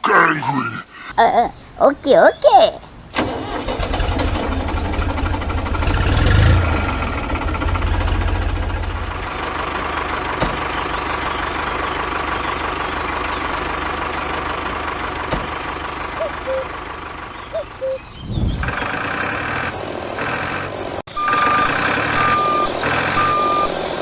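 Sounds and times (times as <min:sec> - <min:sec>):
truck engine idling: 0:02.9 - 0:20.9.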